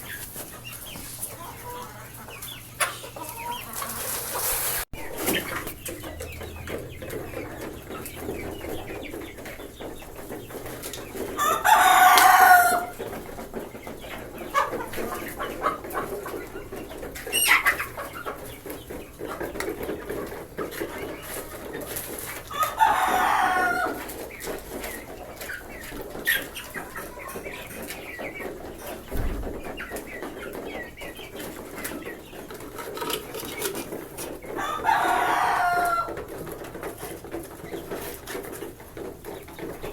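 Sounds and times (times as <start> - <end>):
chicken squawk: 0.0 - 9.1, 11.2 - 13.0, 17.2 - 18.2, 22.5 - 24.1, 34.5 - 36.2
hens clucking: 0.0 - 39.9
rooster crowing: 11.4 - 12.9, 22.5 - 24.0, 34.6 - 36.2.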